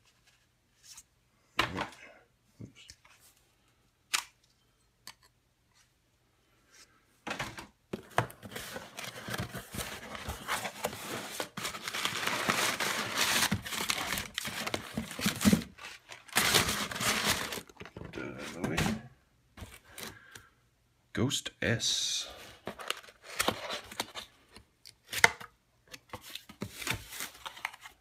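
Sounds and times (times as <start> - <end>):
package tearing and crinkling: 10.8 - 17.8.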